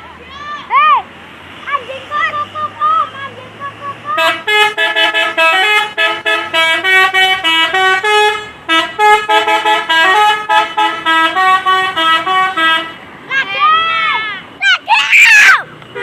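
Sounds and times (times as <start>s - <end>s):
musical bus horn melody: 4.1s - 13.0s.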